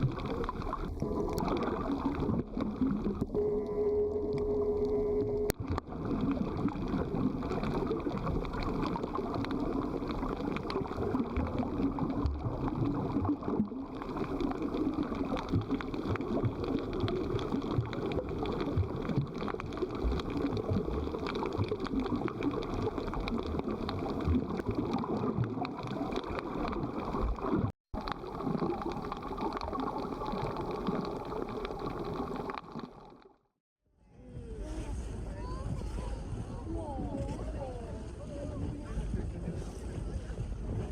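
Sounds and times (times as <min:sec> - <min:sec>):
muffled underwater gurgling: 0:00.0 - 0:33.4.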